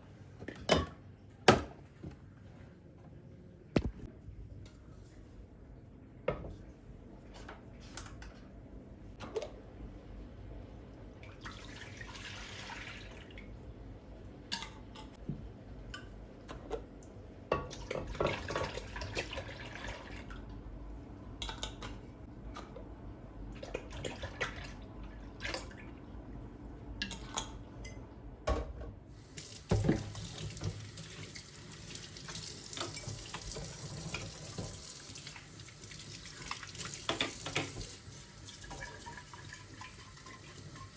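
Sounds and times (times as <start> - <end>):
tap water running into sink: 29.2 - 40.9.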